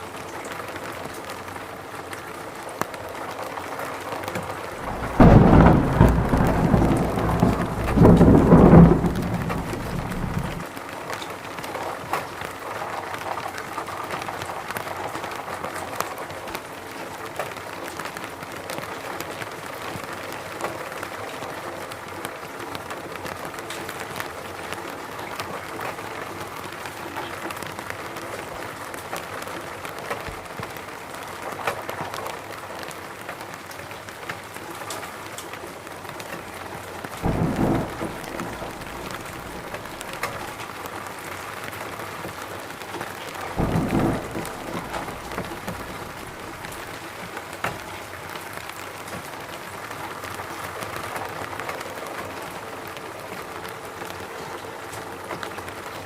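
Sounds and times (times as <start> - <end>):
steady rain falling: 0.0 - 56.0
low rumble of thunder: 4.7 - 10.7, 37.2 - 40.8, 43.5 - 47.2.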